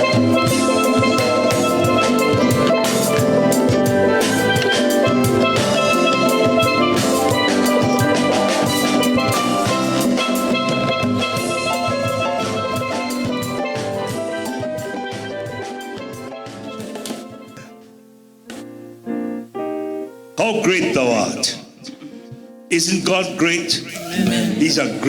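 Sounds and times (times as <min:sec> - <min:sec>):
steelpan music: 0:00.0 - 0:17.8
drum kit: 0:00.0 - 0:18.8.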